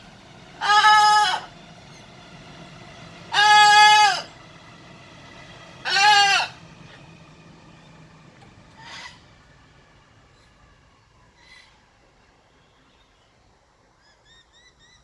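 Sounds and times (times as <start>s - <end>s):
macaw squawking: 0.6s - 1.5s, 3.3s - 4.3s, 5.8s - 6.6s, 8.7s - 9.3s.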